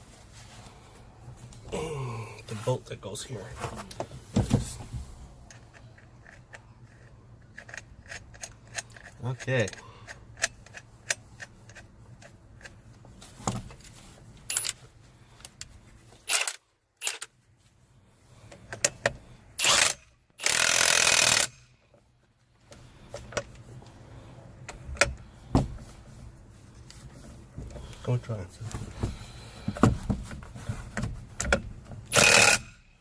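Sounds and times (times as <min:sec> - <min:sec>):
power tool bursts: 0:19.6 - 0:21.6, 0:32.1 - 0:32.8.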